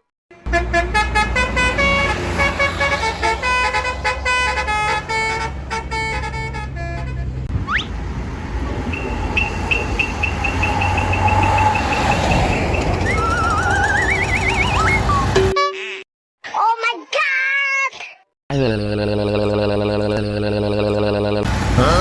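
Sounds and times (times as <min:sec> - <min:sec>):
musical bus horn melody: 0:00.3 - 0:07.5, 0:09.1 - 0:15.8
rapid warbling chirp: 0:08.9 - 0:15.5.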